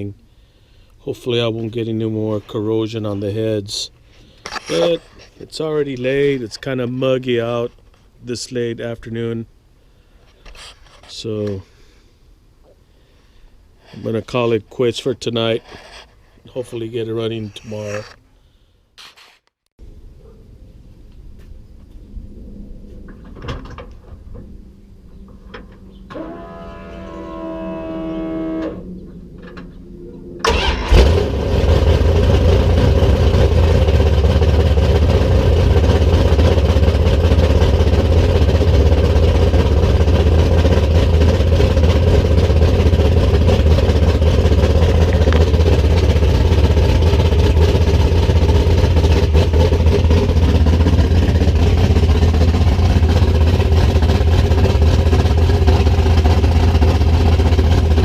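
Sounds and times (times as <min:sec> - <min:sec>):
car engine starting and running: 0:28.6 - 0:58.0
starter motor whir: 0:30.4 - 0:58.0.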